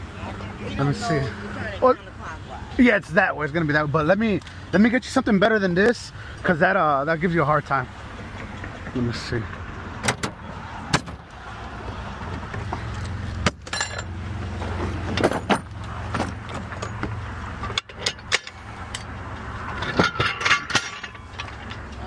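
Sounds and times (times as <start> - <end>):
vehicle idling hum: 0.0 - 22.0
metal tools clanking: 13.4 - 22.0.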